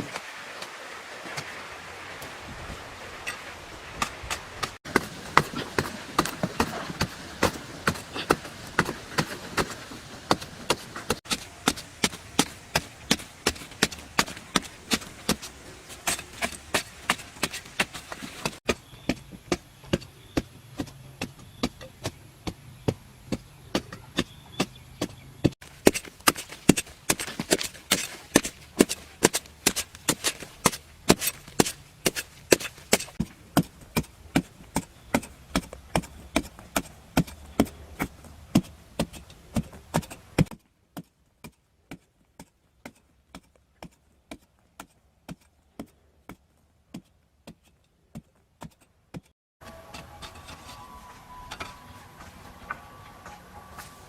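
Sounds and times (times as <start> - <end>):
hand tool chopping strikes: 16.1 - 40.6.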